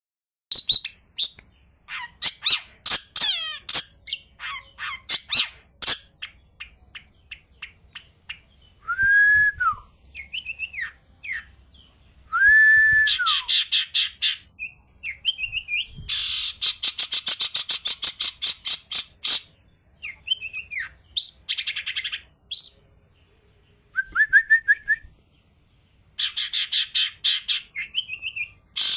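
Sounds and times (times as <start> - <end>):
pet bird chirping and whistling: 0.5 - 8.4, 9.6 - 11.5, 12.3 - 22.8, 26.2 - 28.9.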